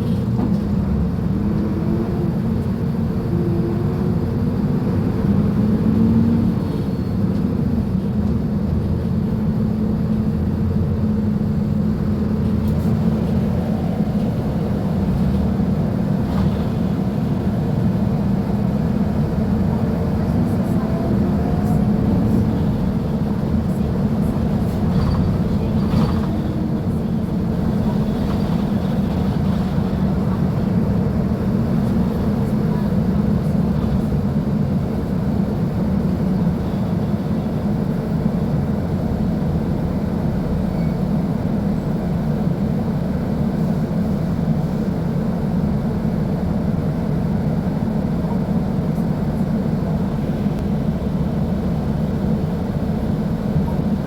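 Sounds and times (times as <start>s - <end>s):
bus diesel engine droning: 0.0s - 54.0s.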